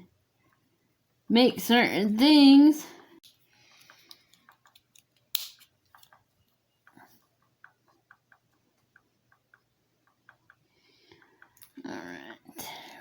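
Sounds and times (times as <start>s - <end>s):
plastic pieces clicking: 3.2s - 7.0s.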